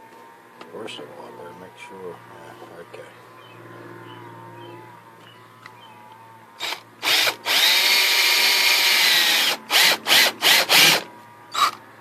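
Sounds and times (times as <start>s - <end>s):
drill trigger pulses: 6.6s - 11.7s
electric drill running: 6.6s - 11.7s.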